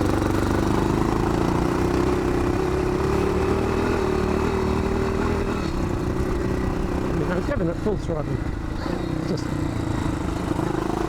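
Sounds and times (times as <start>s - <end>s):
motorcycle engine at full throttle: 0.0s - 11.0s.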